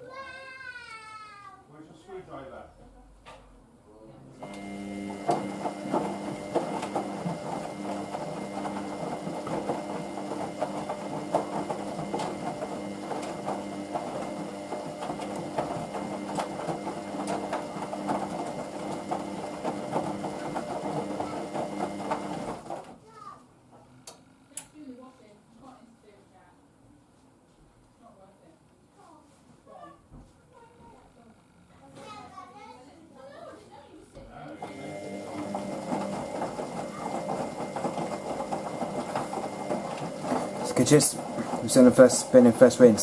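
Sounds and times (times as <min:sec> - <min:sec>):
washing machine motor hum: 0:04.2 - 0:23.0, 0:34.2 - 0:43.0.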